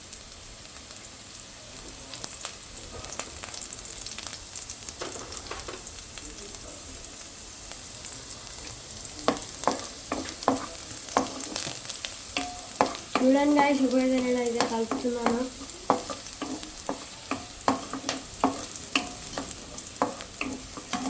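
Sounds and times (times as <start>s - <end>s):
food sizzling in hot oil: 0.0s - 21.0s
spatula knocking and scraping pan: 9.3s - 21.0s.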